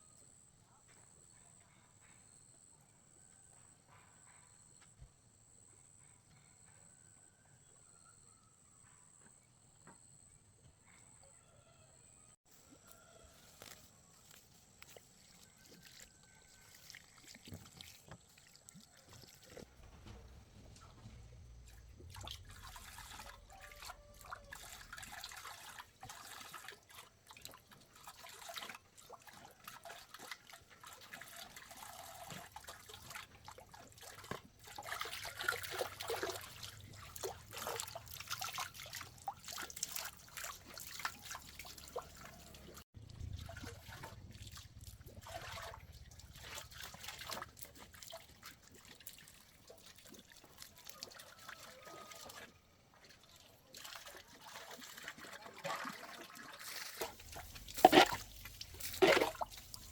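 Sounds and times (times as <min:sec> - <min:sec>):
water trickling and splashing: 0:12.6 - 0:59.9.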